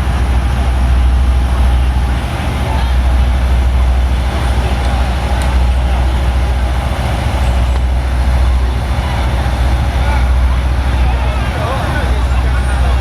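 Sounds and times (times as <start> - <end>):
street noise: 0.0 - 13.0
truck engine rumbling: 0.0 - 13.0.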